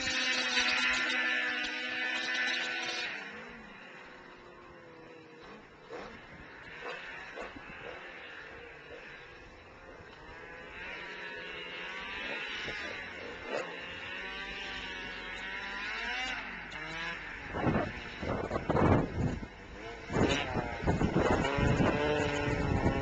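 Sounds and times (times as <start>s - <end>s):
snowmobile engine revving: 0.0s - 23.0s
wind buffeting microphone: 17.4s - 23.0s.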